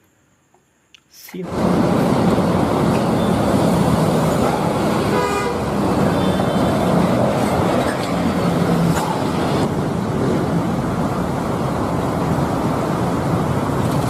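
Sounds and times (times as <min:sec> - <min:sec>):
traffic rumble: 0:01.1 - 0:14.0
horn toot: 0:04.9 - 0:06.9.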